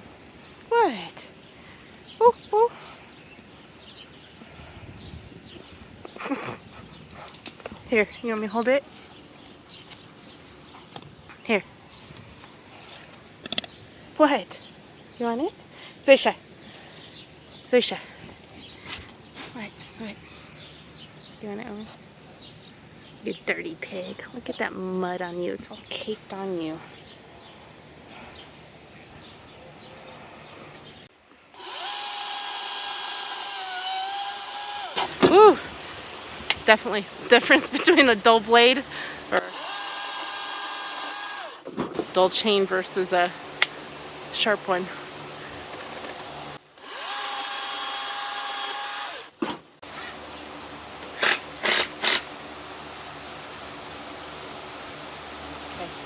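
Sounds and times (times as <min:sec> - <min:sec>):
chainsaw running: 0:31.6 - 0:35.2, 0:39.4 - 0:41.6, 0:46.8 - 0:49.4.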